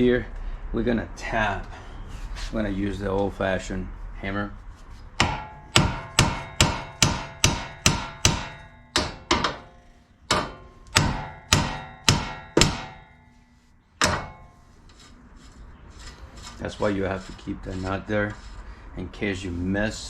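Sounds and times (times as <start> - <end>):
hammer blows ringing on steel: 5.2 - 9.7, 10.3 - 13.4, 14.0 - 14.6.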